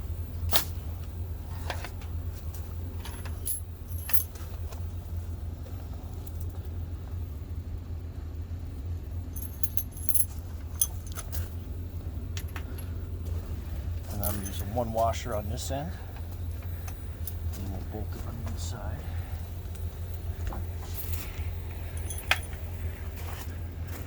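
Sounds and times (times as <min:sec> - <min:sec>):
steady low hum: 0:00.0 - 0:24.0
metal bolts and washers clinking: 0:01.6 - 0:04.7, 0:09.3 - 0:11.6, 0:12.3 - 0:13.0, 0:14.0 - 0:17.6, 0:19.6 - 0:22.9.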